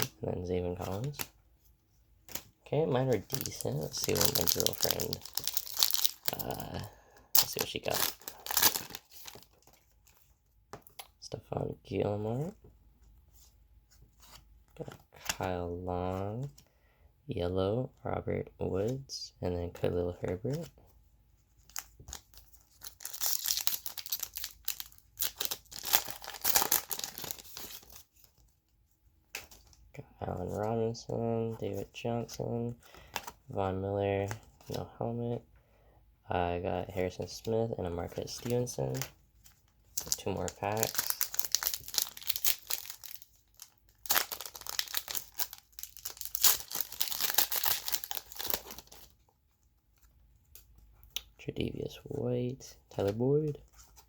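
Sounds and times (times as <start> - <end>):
wrapper torn and crinkled: 3.2 - 9.8, 21.7 - 28.1, 40.0 - 49.1.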